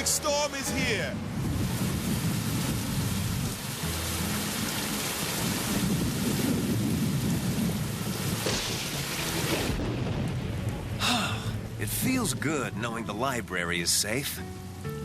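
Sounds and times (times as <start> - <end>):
heavy rain: 0.0 - 15.0
thunder rumbling: 5.2 - 13.5.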